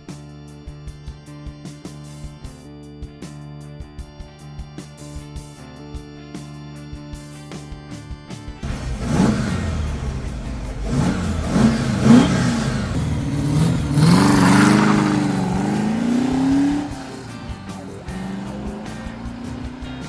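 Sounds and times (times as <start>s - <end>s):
car engine revving: 8.6s - 20.0s.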